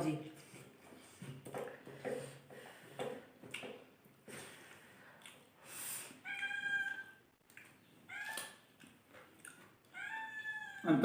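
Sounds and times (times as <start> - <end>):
cat meowing: 6.2 - 7.2, 8.1 - 8.6, 9.9 - 11.0.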